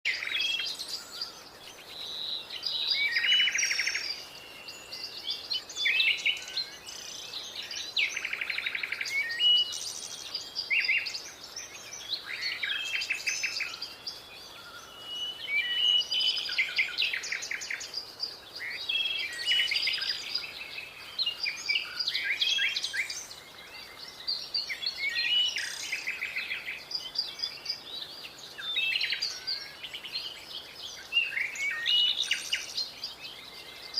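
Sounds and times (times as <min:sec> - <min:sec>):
birds chirping and trilling: 0:00.0 - 0:33.9.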